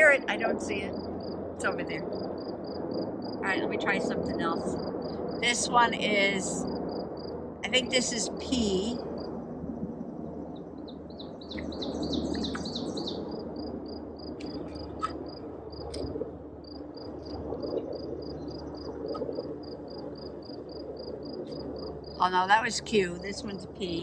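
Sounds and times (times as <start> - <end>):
low steady drone: 0.0 - 24.0.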